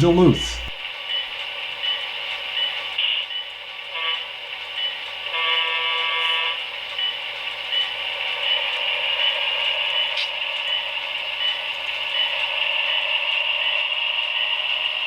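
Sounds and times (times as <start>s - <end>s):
model train running: 0.0s - 15.0s
train horn blasts: 5.3s - 6.6s.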